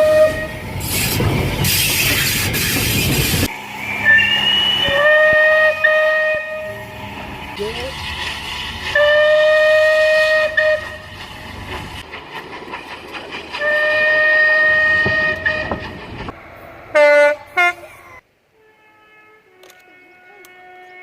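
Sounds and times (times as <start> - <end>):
train horn blasts: 0.0 - 0.8, 3.8 - 7.0, 8.9 - 11.2, 13.6 - 15.8, 16.9 - 17.9, 18.5 - 21.0
train rumbling: 0.0 - 18.2.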